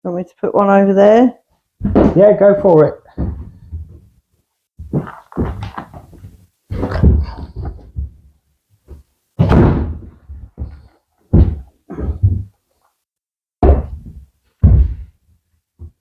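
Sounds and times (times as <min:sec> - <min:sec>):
heavy knocks on wooden floor sheets: 0:01.8 - 0:04.1, 0:04.8 - 0:08.3, 0:08.9 - 0:12.5, 0:13.6 - 0:15.1.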